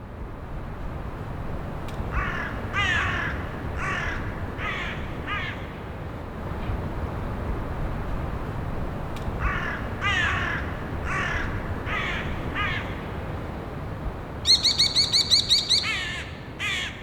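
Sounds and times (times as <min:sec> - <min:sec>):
crow cawing: 0:02.2 - 0:05.7, 0:09.4 - 0:13.0, 0:14.5 - 0:17.0.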